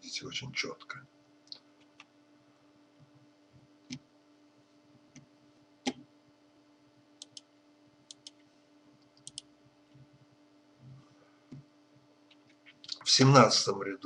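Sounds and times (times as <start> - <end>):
faint steady hum: 0.0 - 14.0
computer mouse clicks: 5.1 - 6.0, 7.2 - 7.5, 8.1 - 8.4, 9.1 - 10.0.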